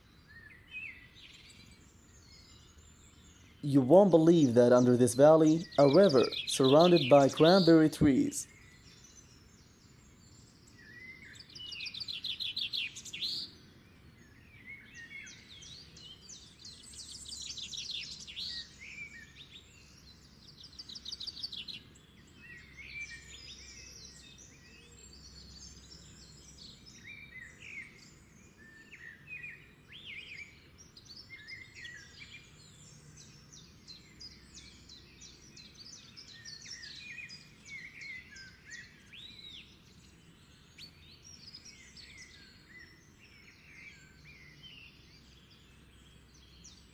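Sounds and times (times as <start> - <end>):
faint background hiss: 0.0 - 10.8
birds singing and trilling: 0.0 - 46.9.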